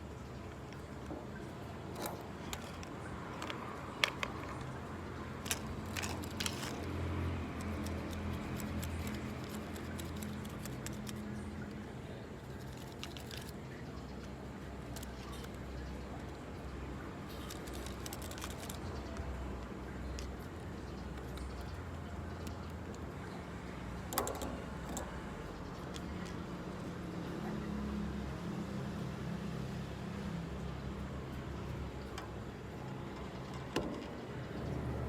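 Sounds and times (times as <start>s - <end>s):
small hard parts clicking and rattling: 0.0s - 27.2s, 31.2s - 35.0s.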